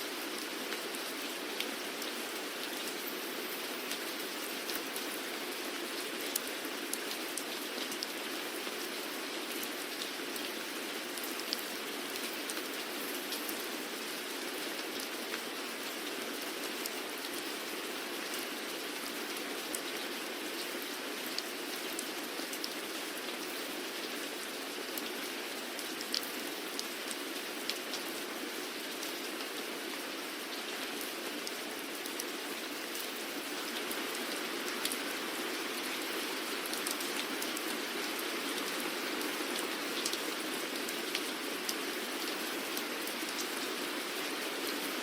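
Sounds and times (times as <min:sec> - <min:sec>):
rain falling: 0:00.0 - 0:45.0
raindrops pattering on surface: 0:00.0 - 0:45.0.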